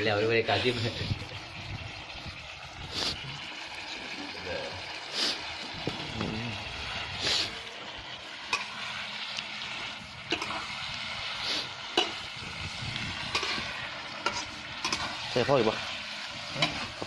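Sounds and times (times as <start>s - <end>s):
food sizzling in a pan: 0.0s - 17.0s
utensil scraping pan: 10.3s - 10.7s, 13.2s - 17.0s.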